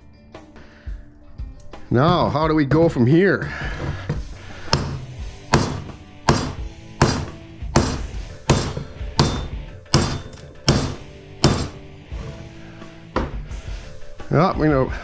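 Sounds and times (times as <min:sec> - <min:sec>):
hammer striking metal: 0:04.7 - 0:11.9.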